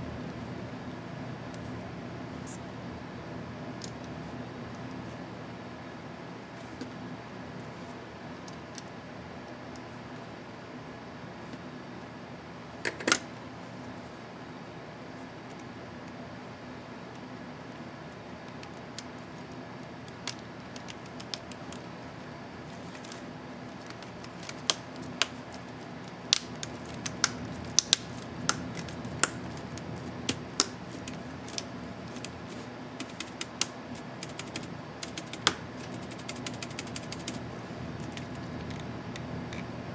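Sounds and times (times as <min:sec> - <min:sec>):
laptop keyboard keys clicking: 0:18.5 - 0:21.9, 0:22.7 - 0:38.9.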